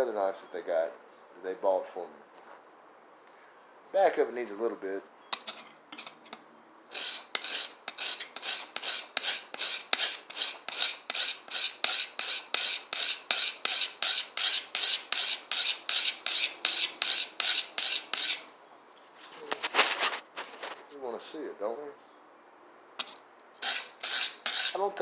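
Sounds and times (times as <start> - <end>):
knife rasping on sharpening stone: 5.4 - 6.2, 6.9 - 18.4, 23.0 - 24.8.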